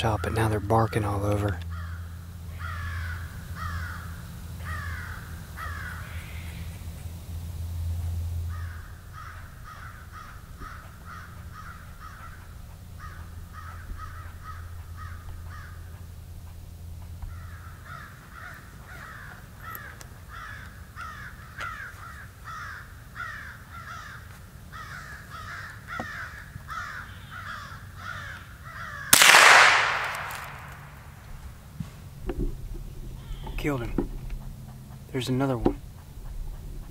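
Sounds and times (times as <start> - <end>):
squirrels barking alarm calls: 0.0 - 31.6, 32.7 - 36.9
rifle shot: 29.1 - 31.3.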